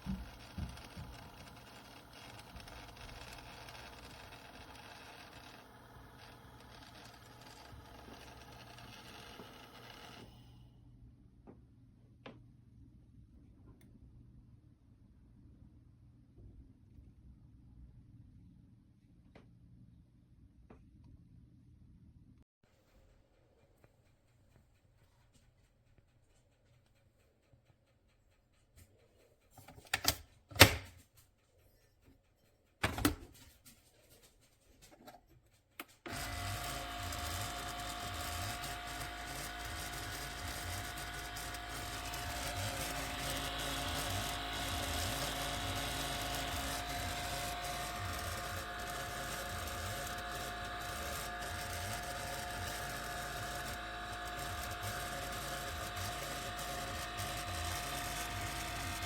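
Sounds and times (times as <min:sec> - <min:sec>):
coffee maker humming: 0:00.0 - 0:10.5, 0:36.0 - 0:59.0.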